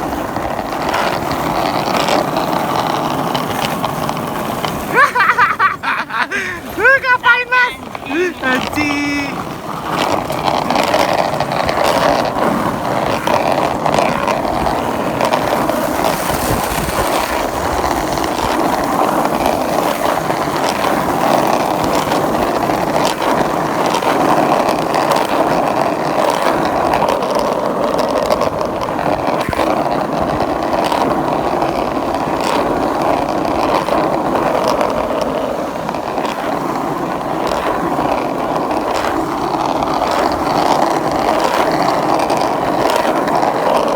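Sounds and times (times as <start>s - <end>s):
skateboard wheels on rough pavement: 0.0s - 43.9s.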